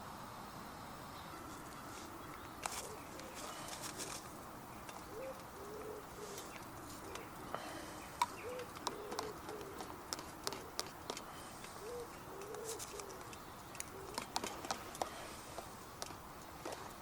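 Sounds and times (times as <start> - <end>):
background hiss: 0.0 - 17.0
pigeon cooing: 2.7 - 4.2, 5.0 - 10.9, 11.7 - 15.3.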